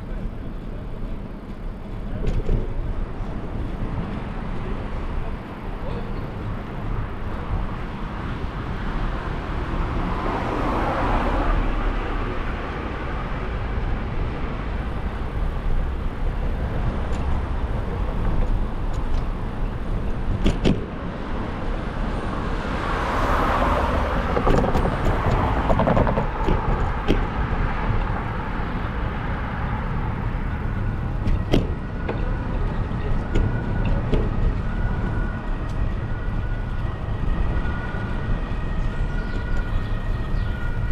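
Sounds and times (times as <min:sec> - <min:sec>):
low traffic rumble: 0:00.0 - 0:40.9
car passing: 0:07.9 - 0:18.3, 0:21.1 - 0:31.2.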